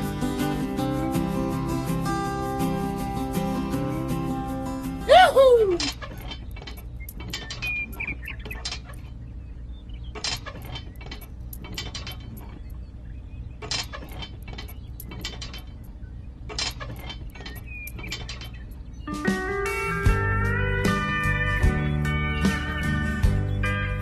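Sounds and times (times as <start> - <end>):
slide guitar music: 0.0 - 6.0, 19.1 - 24.0
steady low hum: 0.0 - 24.0
mechanical clicking and ticking: 5.9 - 9.1, 10.1 - 12.9.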